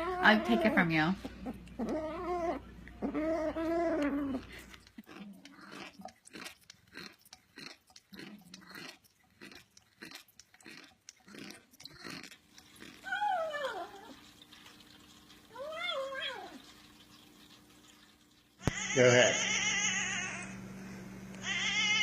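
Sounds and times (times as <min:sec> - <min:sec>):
cat chewing and crunching: 0:01.2 - 0:18.6
cat meowing: 0:18.7 - 0:20.5, 0:21.4 - 0:22.0
cat yowling: 0:18.7 - 0:20.5, 0:21.4 - 0:22.0.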